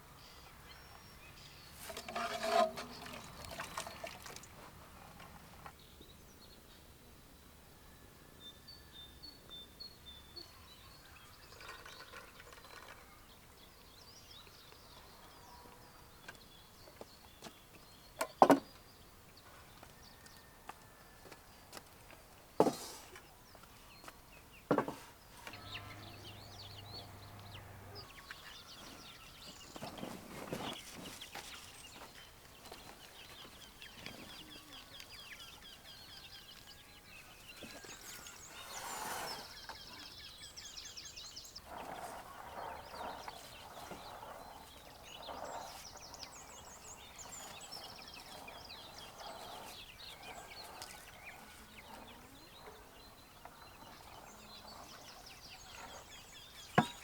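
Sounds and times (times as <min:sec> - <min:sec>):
birds chirping: 0:00.2 - 0:06.8, 0:23.2 - 0:57.0.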